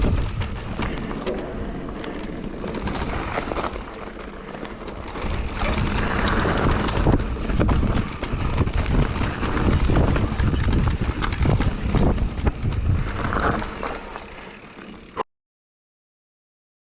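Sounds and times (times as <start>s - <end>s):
wind on microphone: 0.0s - 3.9s, 4.9s - 13.9s
bike rattles and knocks: 0.0s - 15.2s
bike tyre rumble on dirt: 0.0s - 15.2s.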